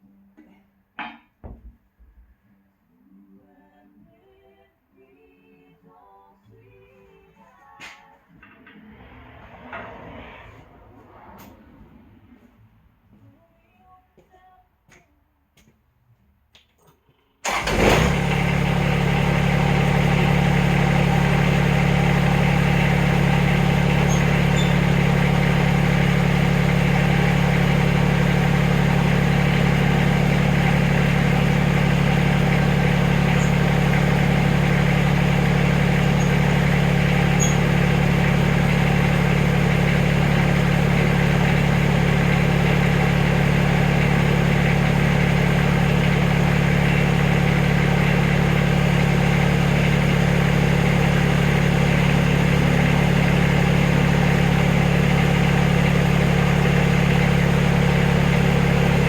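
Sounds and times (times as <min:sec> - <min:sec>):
backhoe engine running: 0:17.4 - 0:59.0.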